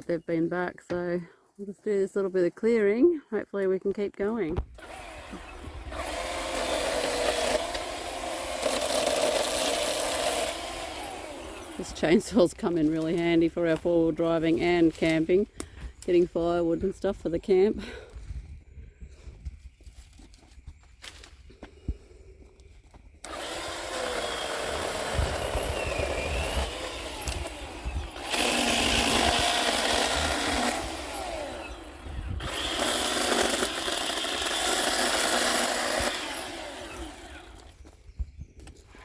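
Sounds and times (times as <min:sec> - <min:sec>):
chainsaw cutting wood: 0:04.5 - 0:16.2, 0:23.1 - 0:37.9.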